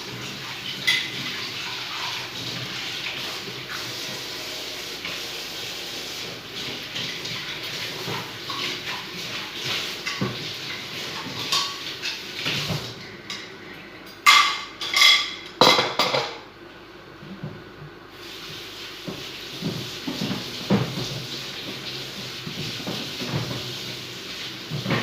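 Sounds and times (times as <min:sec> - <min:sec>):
kitchenware clattering: 0:00.0 - 0:02.3, 0:10.0 - 0:16.4
pots clanking: 0:00.0 - 0:02.7, 0:06.9 - 0:16.4
steady hiss: 0:18.1 - 0:25.0.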